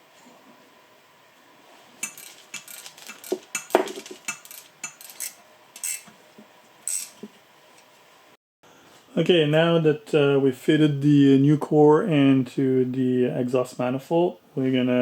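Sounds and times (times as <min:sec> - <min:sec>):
metal parts and tools clinking: 0:02.0 - 0:06.1, 0:06.9 - 0:07.2.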